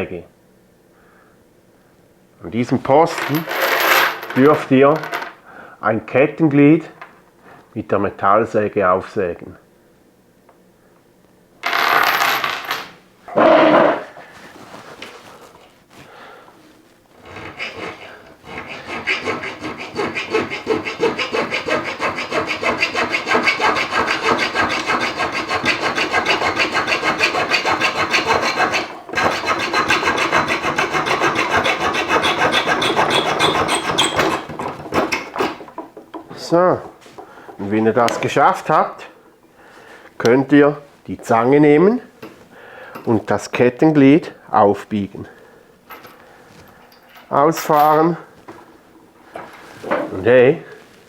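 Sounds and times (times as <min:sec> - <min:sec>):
handling noises: 0:11.6 - 0:17.3, 0:34.4 - 0:38.4, 0:45.8 - 0:51.0
saw blade rasping through metal: 0:17.2 - 0:36.5.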